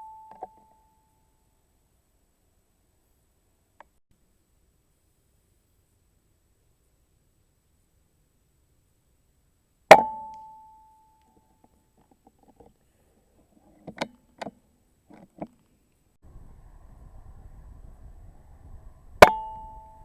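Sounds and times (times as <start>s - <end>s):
air rifle shot with metallic ring: 9.9s - 10.9s, 19.2s - 20.0s.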